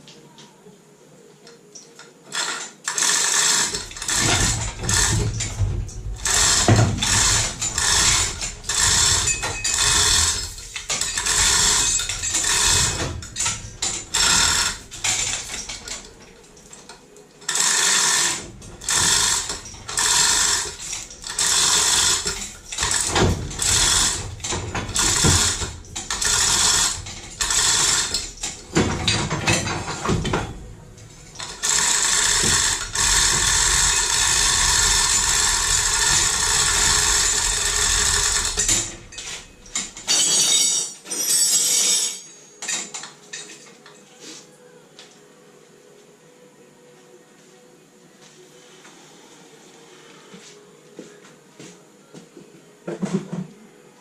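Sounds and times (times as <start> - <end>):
ratcheting mechanism: 2.3 - 43.5.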